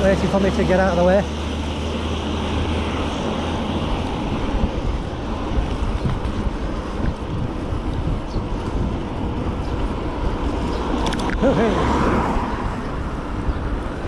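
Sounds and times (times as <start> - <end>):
wind buffeting microphone: 1.3 - 14.0.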